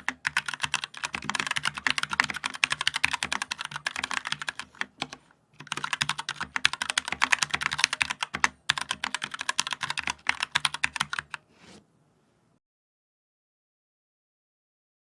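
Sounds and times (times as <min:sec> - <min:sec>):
mechanical keyboard typing: 0:00.0 - 0:11.4.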